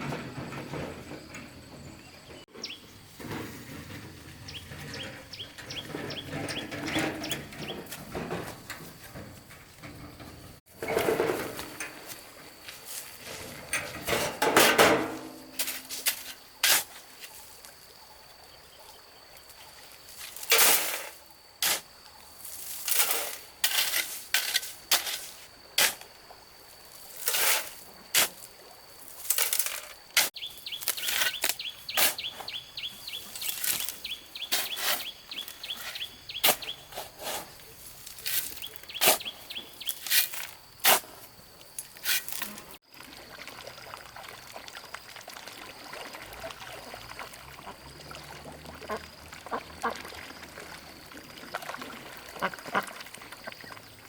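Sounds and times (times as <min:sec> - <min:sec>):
knocks and scrapes on soil and stones: 0:00.0 - 0:17.8, 0:20.0 - 0:26.2, 0:26.9 - 0:42.8
birds calling: 0:00.1 - 0:03.2, 0:03.8 - 0:08.1, 0:30.4 - 0:37.0, 0:37.7 - 0:40.1.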